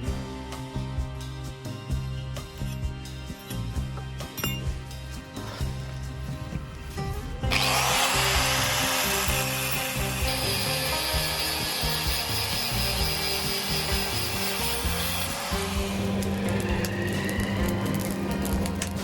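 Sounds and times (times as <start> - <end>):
background music: 0.0 - 19.0
power tool working on steel: 7.5 - 19.0.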